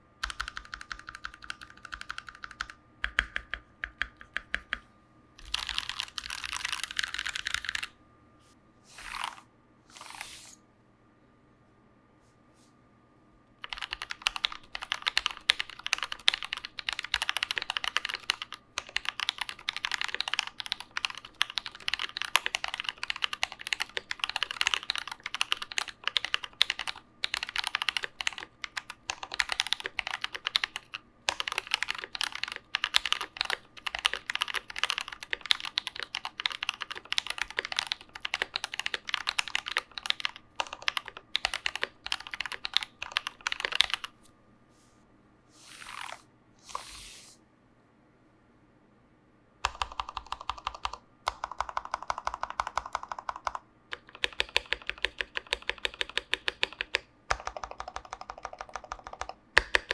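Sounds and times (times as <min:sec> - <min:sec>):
fast typing on mechanical keyboard: 0:00.2 - 0:04.8, 0:05.4 - 0:07.9, 0:13.6 - 0:44.2, 0:49.6 - 0:59.9.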